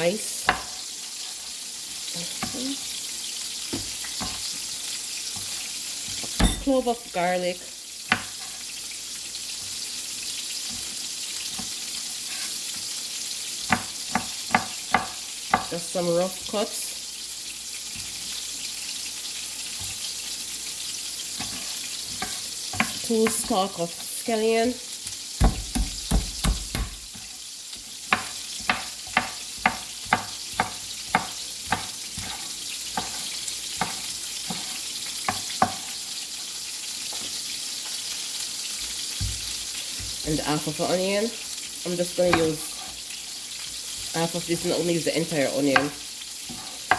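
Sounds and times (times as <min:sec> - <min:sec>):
chicken sizzling in oil: 0:00.0 - 0:46.9
knife chopping on cutting board: 0:13.7 - 0:15.7, 0:21.4 - 0:23.6, 0:25.4 - 0:27.3, 0:28.1 - 0:36.0, 0:39.2 - 0:40.3, 0:42.3 - 0:42.6.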